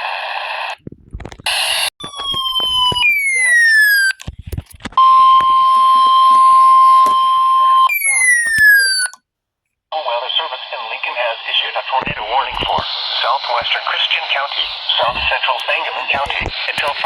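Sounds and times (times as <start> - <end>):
radio static: 0.0 - 3.5, 10.0 - 17.0
steady alarm tone: 5.0 - 9.2.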